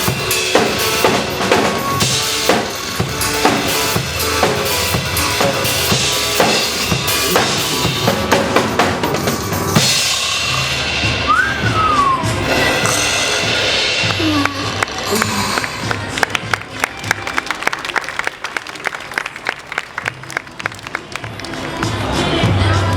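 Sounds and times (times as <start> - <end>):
pop backing track: 0.0 - 14.5
drum kit playing a beat: 0.0 - 17.2.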